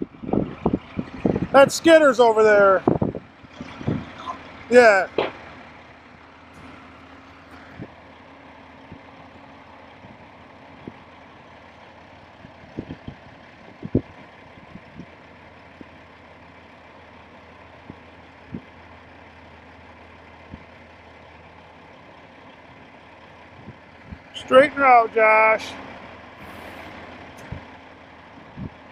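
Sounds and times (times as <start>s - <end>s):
diesel machinery running: 0.0s - 28.9s
sharp knocks: 5.1s - 5.4s.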